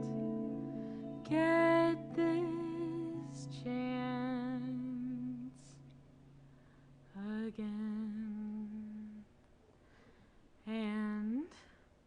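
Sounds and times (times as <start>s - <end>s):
breath: 6.5s - 7.0s, 9.8s - 10.5s.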